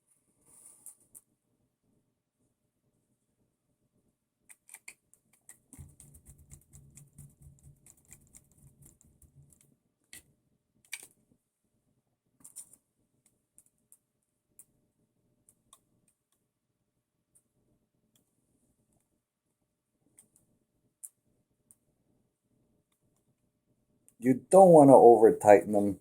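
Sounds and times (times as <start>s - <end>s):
sharp clicks: 4.5s - 10.2s.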